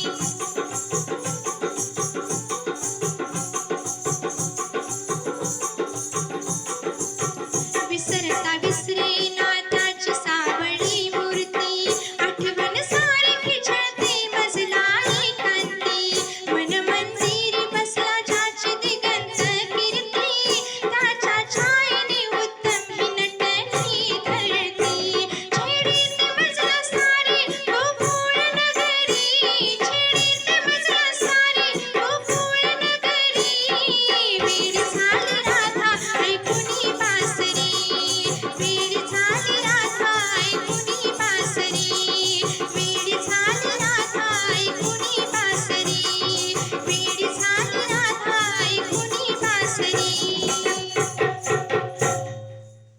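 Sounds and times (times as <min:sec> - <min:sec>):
steady drum beat: 0:00.0 - 0:52.4
devotional singing: 0:28.4 - 0:51.2.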